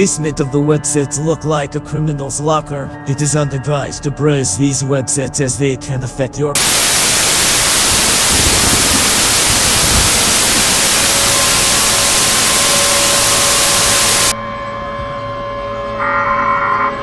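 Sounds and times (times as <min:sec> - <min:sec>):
low hum: 0:06.6 - 0:14.3
broadcast static hiss: 0:06.6 - 0:14.4
steady tones: 0:06.6 - 0:14.4.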